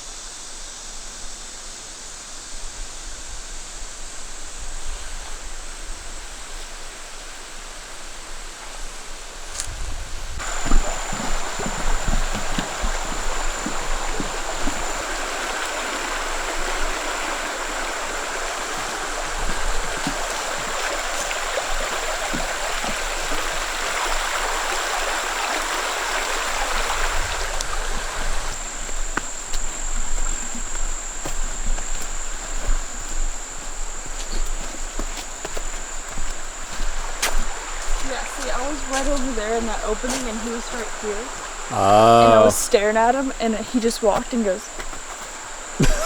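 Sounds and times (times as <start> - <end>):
creek water rushing: 10.4 - 46.0.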